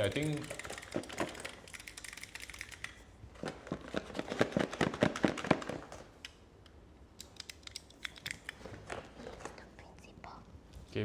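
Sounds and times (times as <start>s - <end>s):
plastic toys clicking and knocking: 0.0s - 3.0s.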